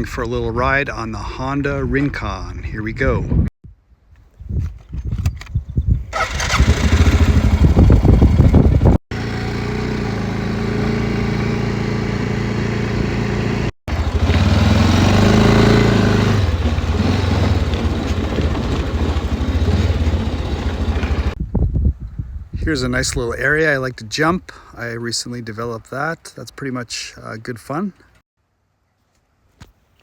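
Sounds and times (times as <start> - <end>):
atv engine running: 6.2 - 21.4.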